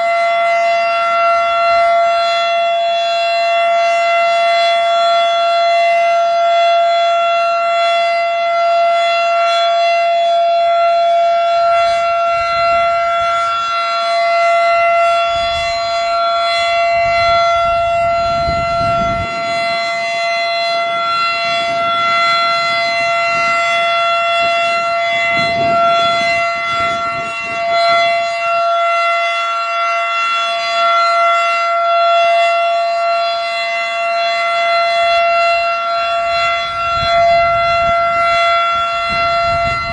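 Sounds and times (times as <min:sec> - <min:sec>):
outdoor warning siren steady tone: 0:00.0 - 0:39.9.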